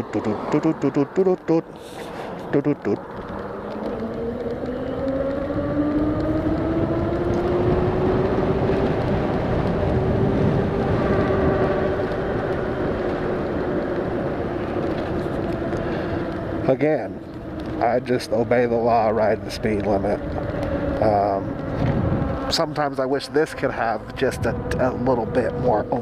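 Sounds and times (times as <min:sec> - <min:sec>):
wind and road noise: 0:00.0 - 0:26.0
electric bike motor whining: 0:03.0 - 0:22.6.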